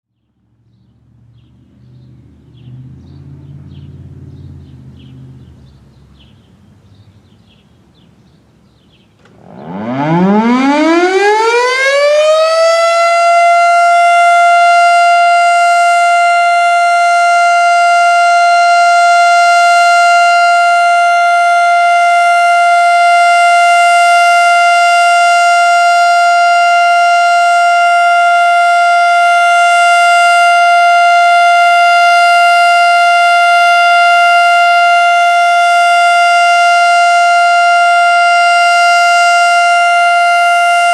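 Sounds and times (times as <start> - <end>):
warning siren high tone: 9.2 - 40.9.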